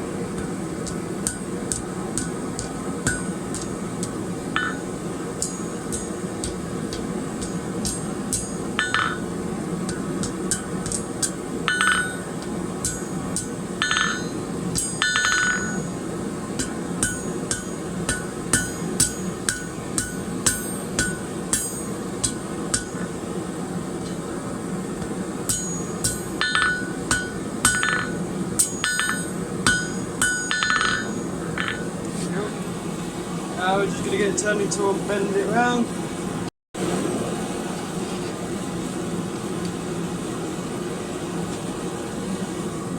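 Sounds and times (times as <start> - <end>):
steady low hum: 0.0 - 42.9
hammer striking steel on anvil: 0.3 - 23.2, 25.0 - 32.0.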